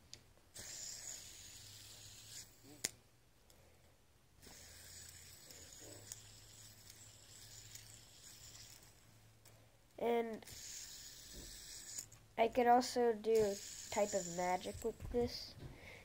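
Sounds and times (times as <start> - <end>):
fidget spinner whirring: 0.5 - 3.0, 4.4 - 9.2, 10.0 - 15.5.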